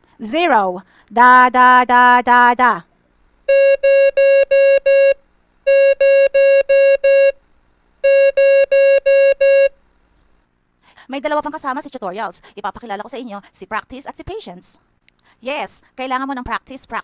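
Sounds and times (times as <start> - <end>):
morse code beeps: 3.5 - 7.4, 8.0 - 9.7.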